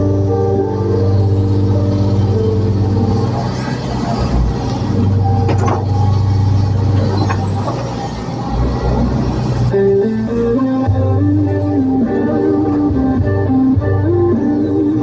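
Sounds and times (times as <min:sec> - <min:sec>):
excavator diesel engine droning: 0:00.0 - 0:15.0
music: 0:00.0 - 0:15.0.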